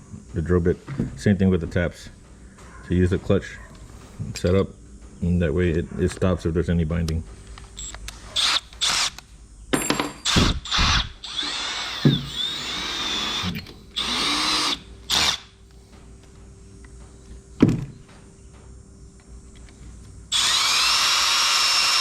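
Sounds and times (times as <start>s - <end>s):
power drill boring into metal: 7.8s - 9.2s, 10.2s - 15.5s, 20.3s - 22.0s.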